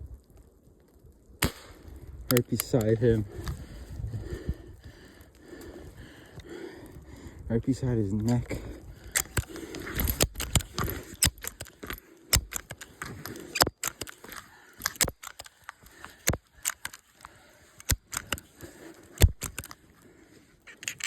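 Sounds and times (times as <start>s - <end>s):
sharp handling clicks and knocks: 1.4s - 4.0s, 8.2s - 20.0s, 20.6s - 21.0s.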